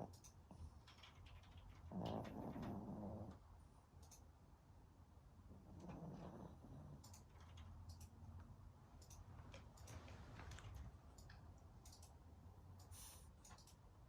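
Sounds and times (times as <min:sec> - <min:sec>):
light irregular clicks: 0:00.0 - 0:01.9, 0:04.0 - 0:04.3, 0:07.0 - 0:12.2, 0:12.8 - 0:13.9
pet snoring: 0:01.9 - 0:03.4, 0:05.7 - 0:07.0.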